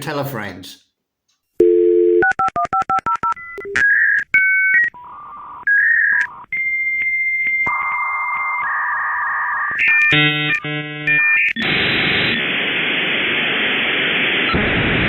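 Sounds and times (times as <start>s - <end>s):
telephone dial tone: 1.6s - 10.1s
touch-tone dialing beeps: 1.6s - 10.1s
electronic phone-line tones: 1.6s - 11.7s.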